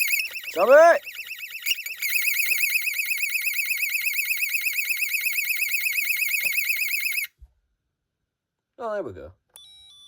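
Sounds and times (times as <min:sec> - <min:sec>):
electronic alarm siren warbling: 0:00.0 - 0:07.3.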